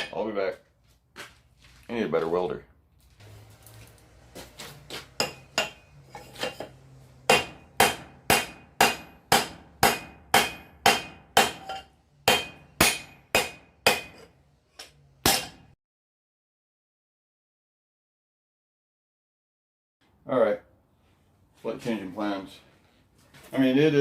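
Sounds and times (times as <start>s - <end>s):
hammer striking hot steel on anvil: 5.1s - 15.8s.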